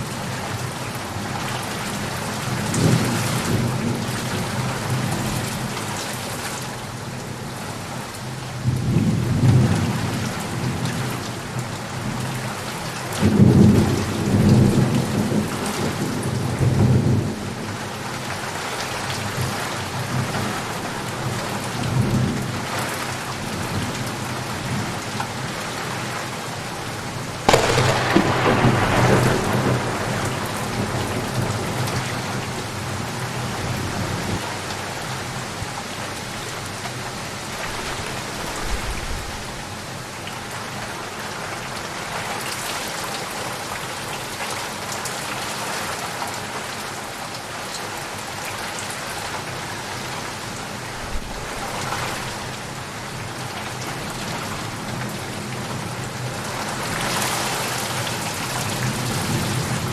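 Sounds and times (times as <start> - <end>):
heavy rain falling: 0.0 - 59.9
thunder clap and rumble: 27.2 - 34.4.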